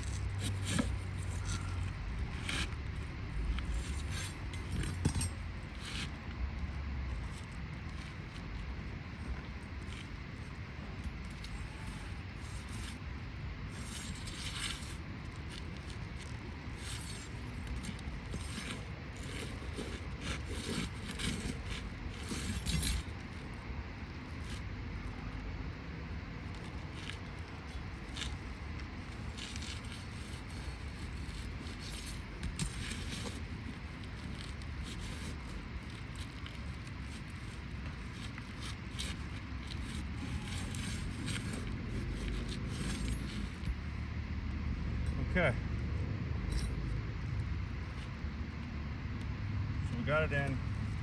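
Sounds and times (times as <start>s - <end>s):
hand tools clinking: 0.0s - 2.8s, 3.4s - 6.1s, 13.7s - 23.2s, 29.1s - 43.8s
steady low rumble: 0.0s - 51.0s.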